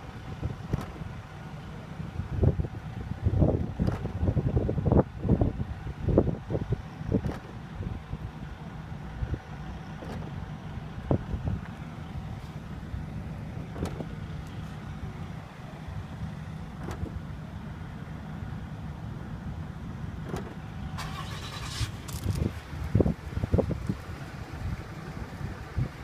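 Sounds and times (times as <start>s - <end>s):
steady low rumble: 0.0s - 26.0s
liftgate latch clicking: 16.8s - 17.2s.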